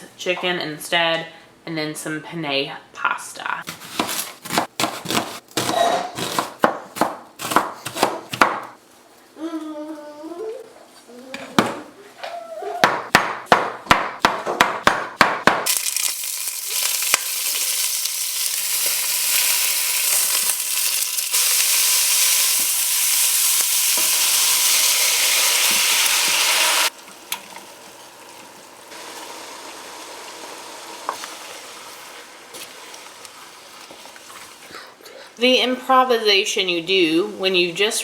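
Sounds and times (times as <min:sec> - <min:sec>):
food sizzling in a pot: 0:15.6 - 0:34.7.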